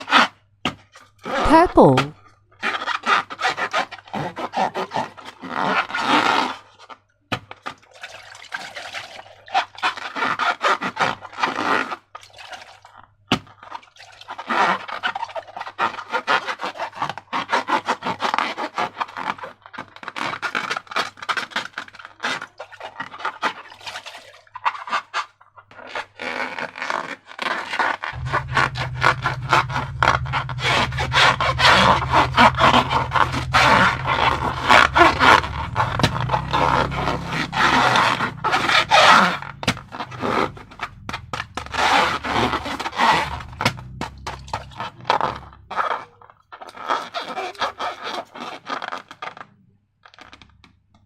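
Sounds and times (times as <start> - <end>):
slime rubbing and squishing: 1.3 - 6.9, 24.6 - 50.8
low hum: 28.2 - 45.7.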